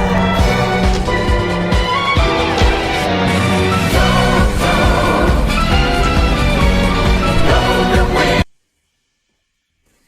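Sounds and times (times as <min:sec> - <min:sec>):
steady drum beat: 0:00.0 - 0:03.2.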